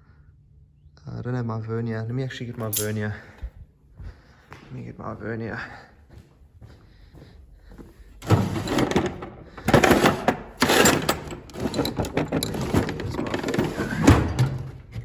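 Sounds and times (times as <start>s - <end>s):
tools clattering and scraping: 2.6s - 3.3s, 8.2s - 15.0s.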